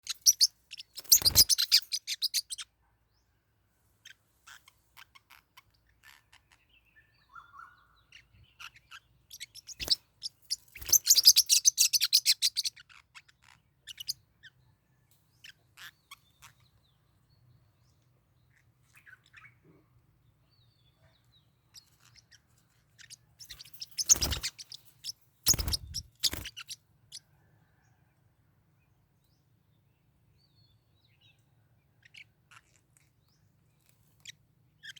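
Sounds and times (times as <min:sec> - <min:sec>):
parrotlets chirping rapidly: 0:00.0 - 0:02.7, 0:04.0 - 0:06.6, 0:07.4 - 0:14.6, 0:21.7 - 0:27.2.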